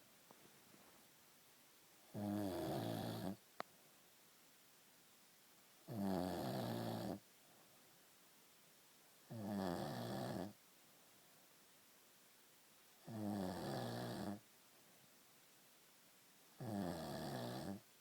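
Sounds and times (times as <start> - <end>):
man snoring: 2.2 - 3.4, 5.9 - 7.2, 9.3 - 10.5, 13.1 - 14.4, 16.6 - 17.8.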